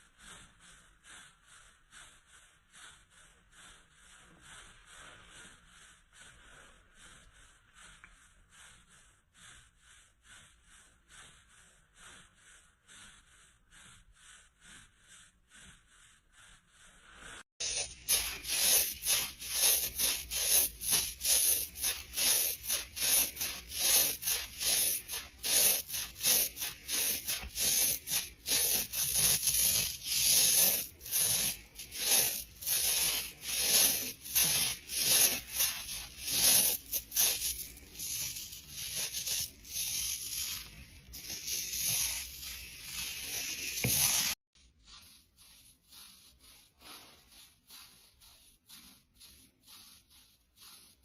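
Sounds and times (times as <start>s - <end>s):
tights being rubbed: 0.0s - 51.0s.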